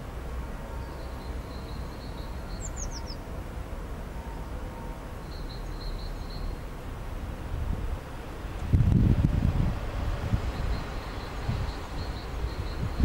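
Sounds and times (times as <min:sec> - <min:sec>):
distant traffic: 0:00.0 - 0:13.0
wind: 0:00.0 - 0:13.0
songbird chirping: 0:00.6 - 0:06.8, 0:10.4 - 0:13.0.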